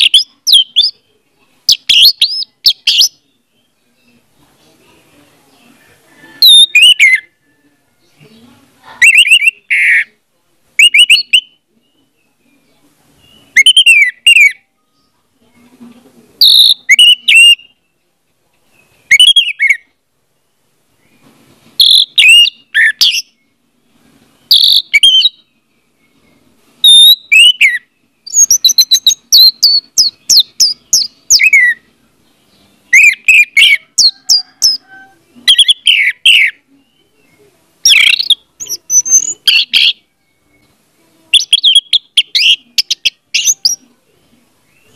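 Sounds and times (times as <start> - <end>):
thrush singing whistled notes: 6.1 - 8.2, 10.8 - 12.6, 16.4 - 18.0, 19.1 - 20.0, 21.8 - 23.6, 24.4 - 31.9, 32.5 - 40.7, 41.4 - 43.9.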